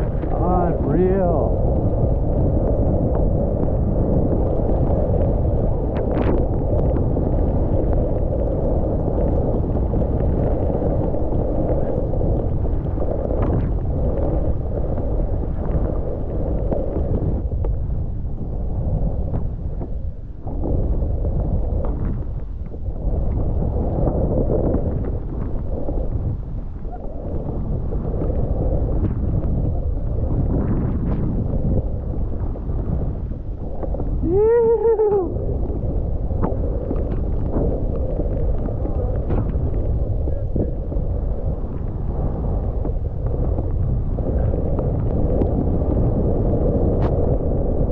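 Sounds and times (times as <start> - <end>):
wind rushing over microphone: 0.0 - 47.9
skier whooping: 34.2 - 35.8.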